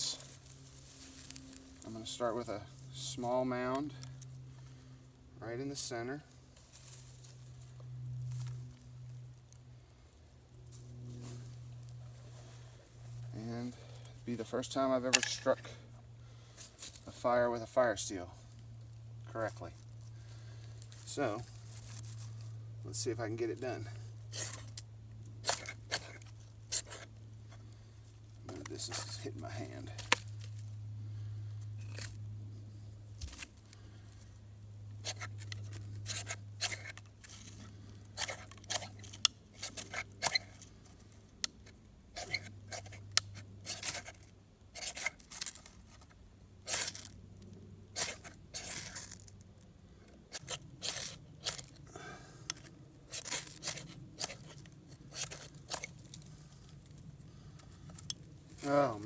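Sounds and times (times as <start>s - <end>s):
knife scraping fire steel: 24.3s - 24.8s, 25.4s - 27.1s, 28.5s - 30.2s, 35.0s - 40.8s, 42.1s - 47.2s, 47.9s - 49.3s, 50.3s - 51.8s, 52.5s - 56.8s.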